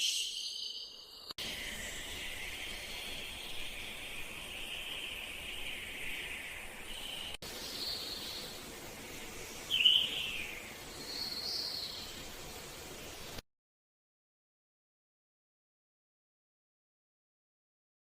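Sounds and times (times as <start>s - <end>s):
bird calls: 0.0s - 8.6s, 9.6s - 12.2s.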